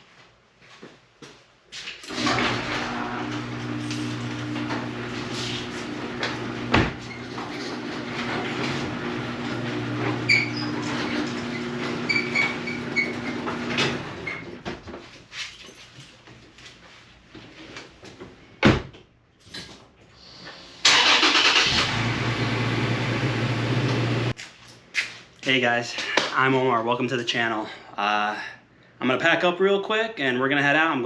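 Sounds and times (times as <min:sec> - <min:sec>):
engine starting up: 0:02.1 - 0:03.6, 0:20.8 - 0:24.3
car engine running: 0:21.7 - 0:24.3.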